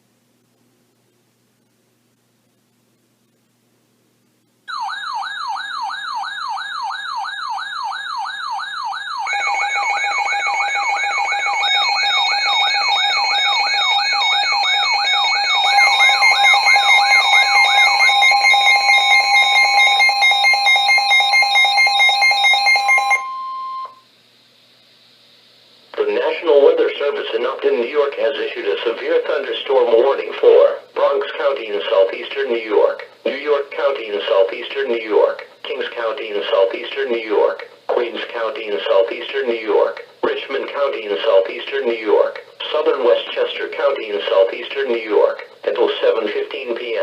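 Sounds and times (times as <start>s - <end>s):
warbling siren: 4.7s - 24.0s
steady alert tones: 7.7s - 24.0s
steady high tone: 8.3s - 24.0s
fast beeping: 9.3s - 24.0s.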